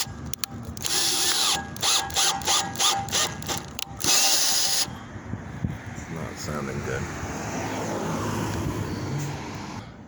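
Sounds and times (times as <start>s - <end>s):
power drill driving screw into metal: 0.8s - 4.9s.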